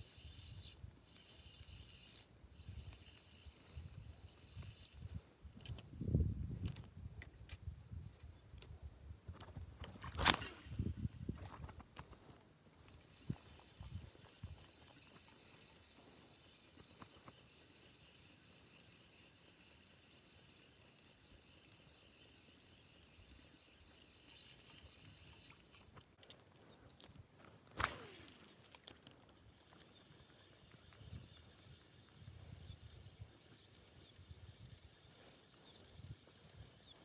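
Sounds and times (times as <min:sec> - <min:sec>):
high-pitched insect chorus: 0:00.0 - 0:37.0
sharp clicks: 0:05.6 - 0:07.7.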